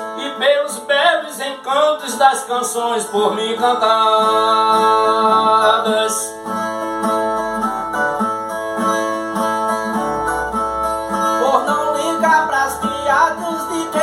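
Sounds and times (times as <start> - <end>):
plucked viola playing: 6.7 - 14.0.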